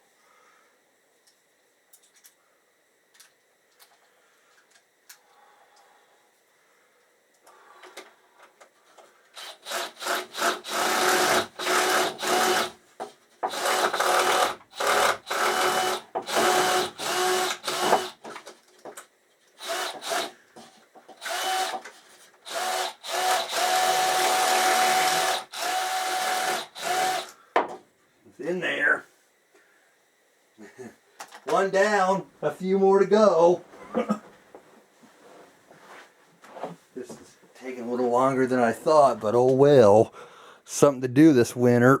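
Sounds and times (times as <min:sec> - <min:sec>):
power drill whining: 0:09.4 - 0:12.8, 0:13.5 - 0:18.2, 0:19.6 - 0:20.4, 0:21.2 - 0:27.4.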